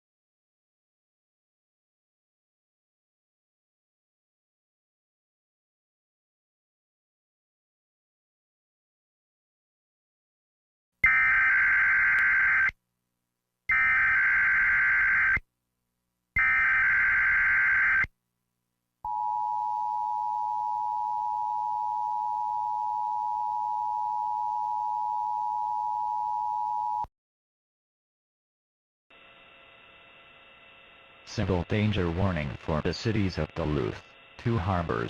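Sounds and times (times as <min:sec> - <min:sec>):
steady dual tone alert: 0:11.0 - 0:12.7, 0:13.7 - 0:15.4, 0:16.4 - 0:18.1, 0:19.1 - 0:27.1, 0:31.2 - 0:35.0.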